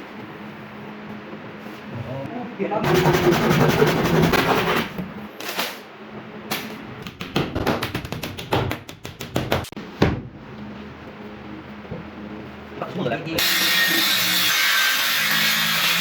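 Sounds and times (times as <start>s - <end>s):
clicks and knocks on wood panels: 6.6s - 9.8s.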